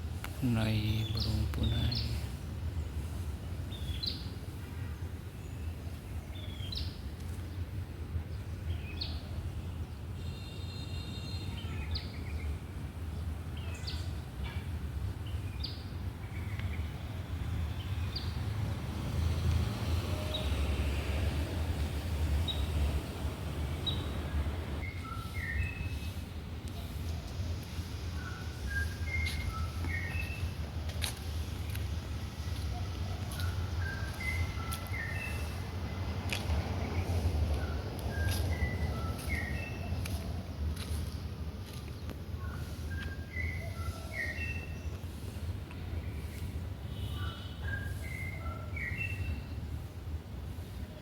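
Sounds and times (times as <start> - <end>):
birds chirping: 0.4 - 4.3, 23.6 - 45.2.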